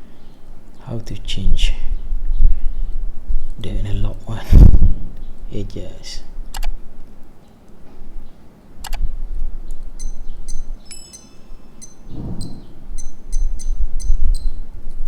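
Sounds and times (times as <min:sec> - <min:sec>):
digital watch beeping: 0:10.0 - 0:14.6
low handling rumble: 0:12.1 - 0:14.2.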